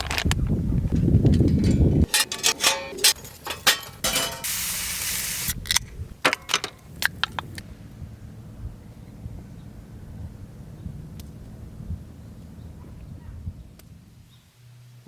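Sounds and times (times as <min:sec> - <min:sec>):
wind rumble on microphone: 0:00.0 - 0:02.1, 0:05.2 - 0:14.5
metallic clinks and clatters: 0:00.9 - 0:05.1
hiss: 0:04.2 - 0:05.6.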